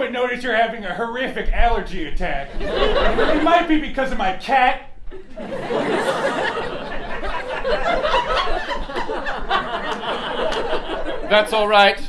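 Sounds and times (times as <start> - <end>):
audience laughing: 2.5 - 3.7, 5.1 - 11.7.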